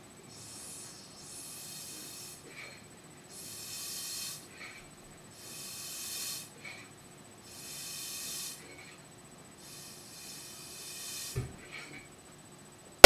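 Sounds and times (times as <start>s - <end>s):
ball pump hissing: 0.3s - 4.8s, 5.4s - 6.8s, 7.5s - 8.9s, 9.6s - 11.6s.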